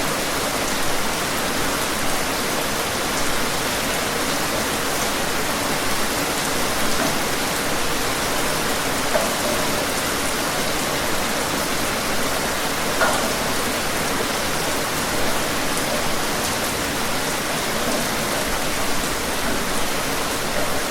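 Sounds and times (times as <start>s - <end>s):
individual raindrops: 0.0s - 20.9s
steady rain: 0.0s - 20.9s.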